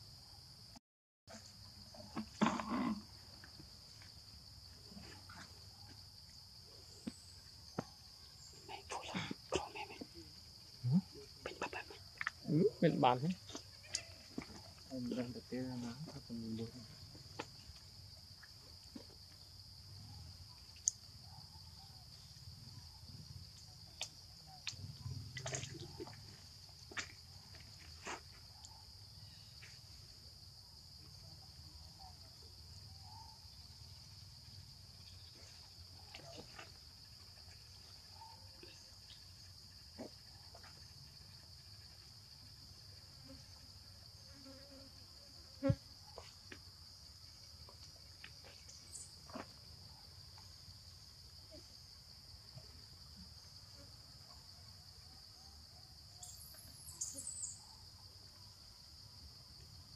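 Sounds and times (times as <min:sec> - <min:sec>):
insects droning: 0:00.0 - 0:59.9
faint ticks and rustles: 0:13.3 - 0:19.6.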